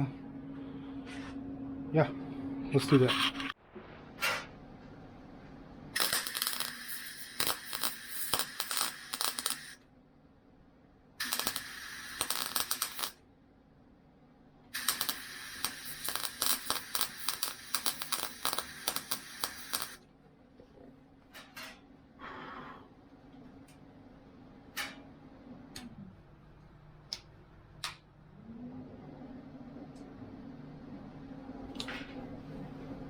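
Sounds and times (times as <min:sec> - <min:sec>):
welder arc crackling: 0:06.0 - 0:09.8, 0:11.2 - 0:13.2, 0:14.8 - 0:20.0.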